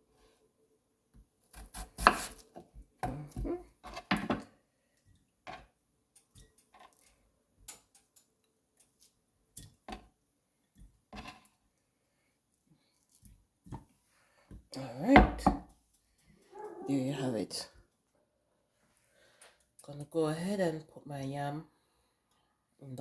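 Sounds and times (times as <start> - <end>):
knife chopping on board: 1.5 - 2.4.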